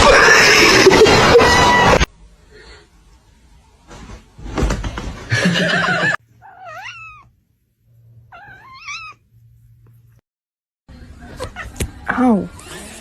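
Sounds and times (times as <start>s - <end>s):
loud rustling and knocking: 3.9s - 5.6s
cat meowing: 6.4s - 7.3s, 8.3s - 9.2s.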